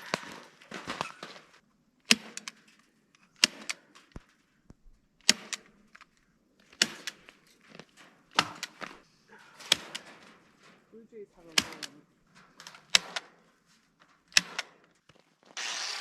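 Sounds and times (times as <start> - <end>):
rustling: 0.0 - 1.7.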